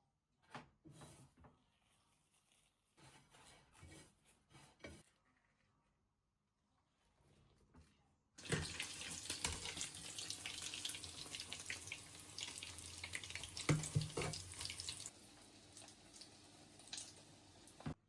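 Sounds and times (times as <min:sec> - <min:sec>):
tap water running into sink: 0:08.4 - 0:18.0.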